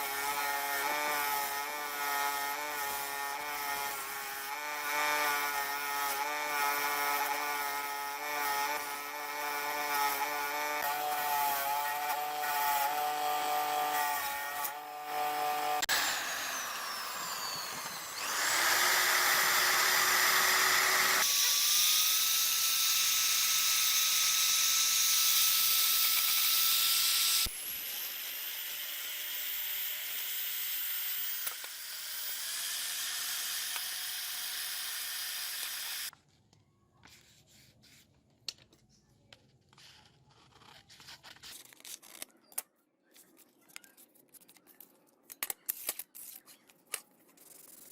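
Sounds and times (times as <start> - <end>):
small electric power tools running: 0.0 - 36.1.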